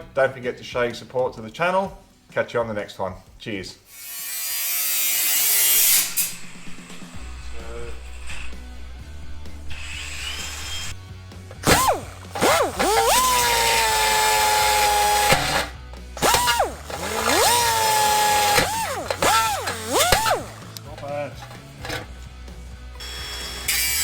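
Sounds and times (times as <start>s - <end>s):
power tool motor bursts: 11.6s - 20.8s, 21.4s - 22.1s, 23.0s - 24.0s.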